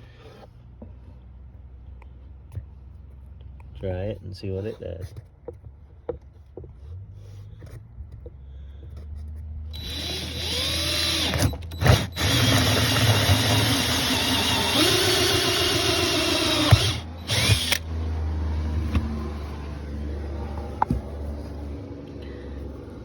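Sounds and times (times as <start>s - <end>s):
power drill whining: 9.7s - 17.9s.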